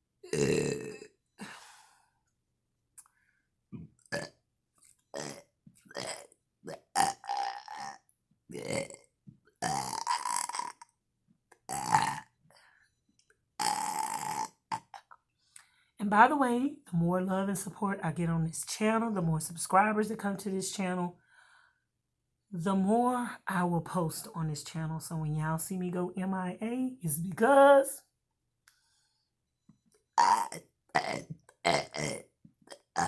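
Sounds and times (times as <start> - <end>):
woman burping: 0.2 - 1.6, 3.7 - 4.4, 5.1 - 10.9, 11.7 - 12.3, 13.6 - 15.2, 30.2 - 33.0.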